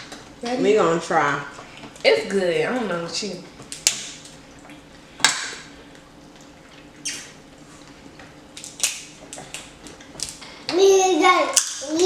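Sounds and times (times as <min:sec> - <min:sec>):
faint room hum: 0:00.0 - 0:12.0
eating clicks and smacks: 0:03.6 - 0:10.5.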